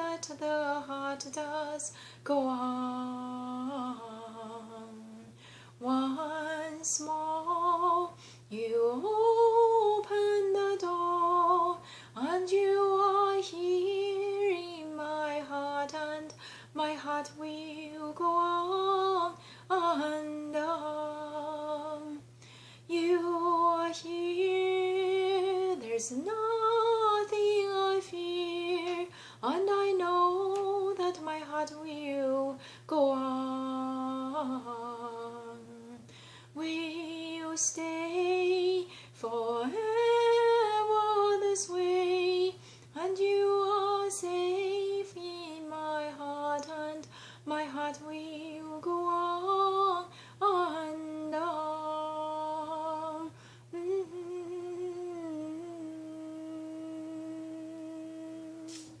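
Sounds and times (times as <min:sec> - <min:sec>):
woman humming a slow melody: 0:50.8 - 0:59.0.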